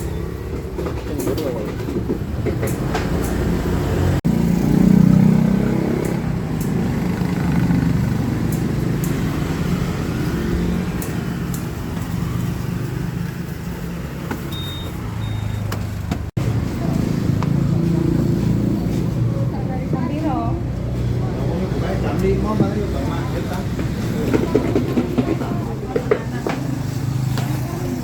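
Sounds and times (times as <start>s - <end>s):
road traffic rumble: 0.0s - 28.0s
short high beeps: 14.5s - 15.7s.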